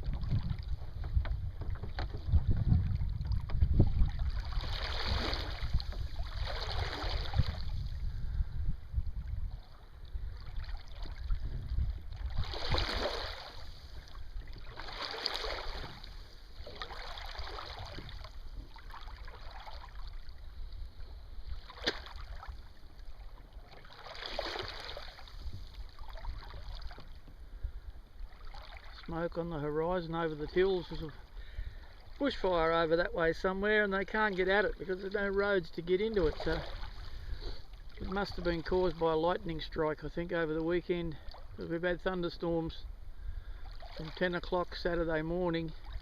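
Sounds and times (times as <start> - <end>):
wind rumble on microphone: 0.0 - 23.7, 24.5 - 28.9
water splashing around a kayak: 0.0 - 46.0.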